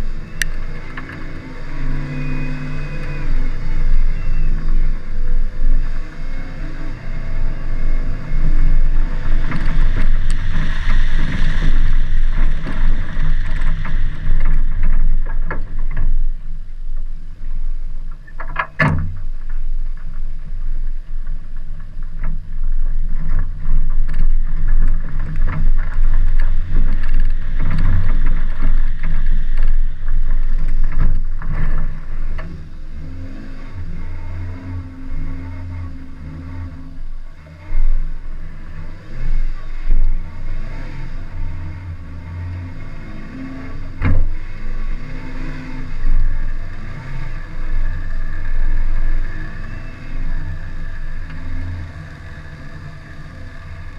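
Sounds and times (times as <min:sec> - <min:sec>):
car engine running hard: 0:00.0 - 0:53.9
knocks and rattles: 0:07.2 - 0:37.1.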